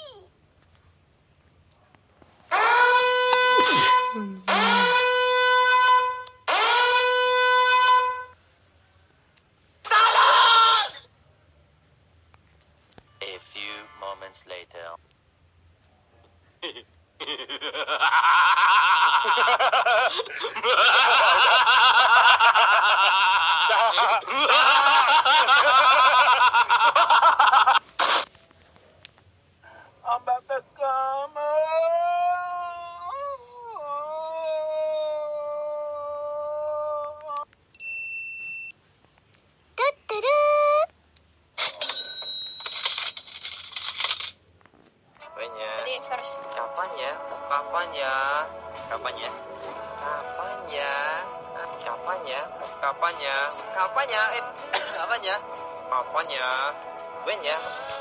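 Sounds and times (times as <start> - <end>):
short burst of noise: 2.5 - 4.8
horn-like wind tone blasts: 2.5 - 8.4
high-pitched snickering laugh: 16.6 - 28.2.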